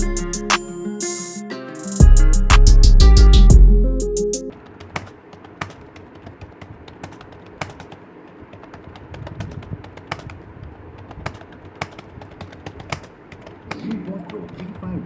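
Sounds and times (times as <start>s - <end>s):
computer keyboard typing: 4.4s - 15.0s.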